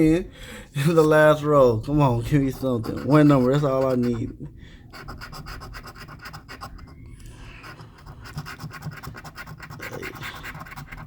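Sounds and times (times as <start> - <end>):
lottery ticket being scratched: 2.2 - 4.4, 5.0 - 11.0.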